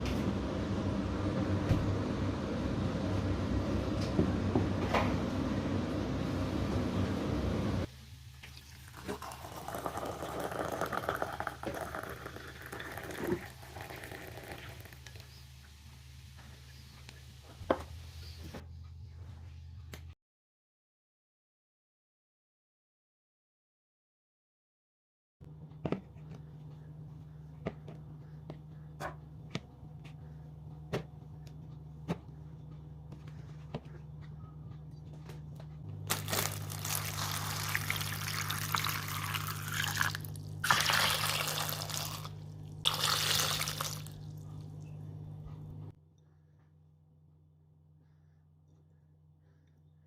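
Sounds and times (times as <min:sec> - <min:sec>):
low hum: 0:00.0 - 0:08.4, 0:25.4 - 0:50.0.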